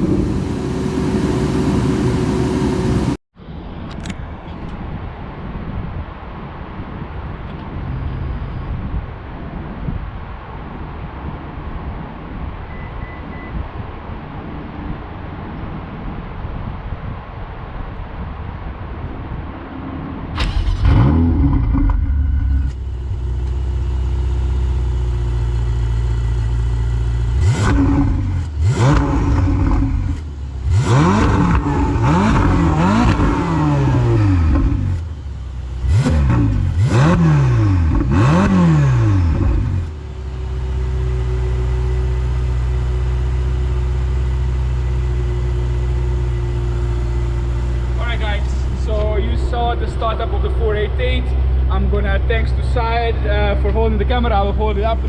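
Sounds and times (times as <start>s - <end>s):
car engine idling: 0.0s - 3.2s, 22.0s - 55.0s
car engine starting: 0.0s - 3.2s, 20.3s - 55.0s
engine throttle blips: 0.0s - 3.2s, 20.4s - 55.0s.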